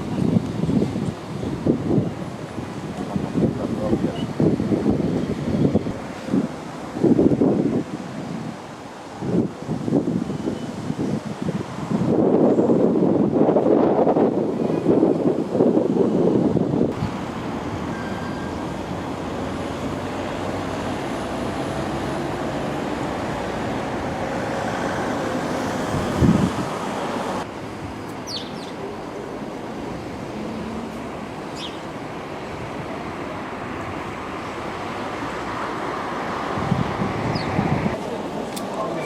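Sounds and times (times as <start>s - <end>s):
road traffic noise: 0.0s - 39.0s
passing engine tone: 17.0s - 23.6s.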